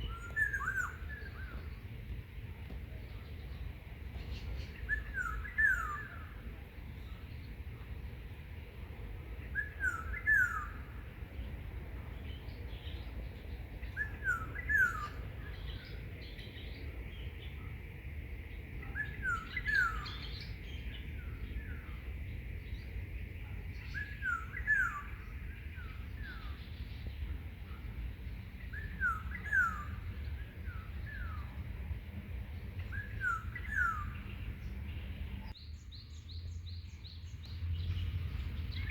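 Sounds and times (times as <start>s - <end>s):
songbird whistling falling notes: 0.0s - 1.4s
steady low rumble: 0.0s - 38.9s.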